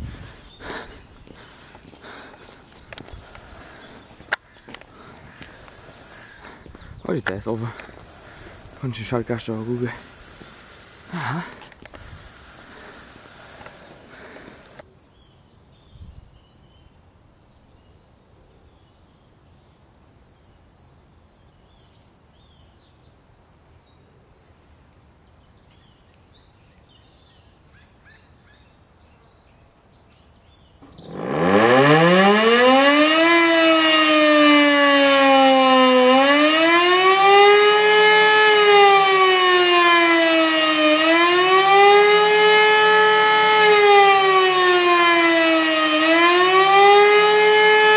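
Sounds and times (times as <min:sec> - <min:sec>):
electric motor siren wailing: 0:30.8 - 0:47.9.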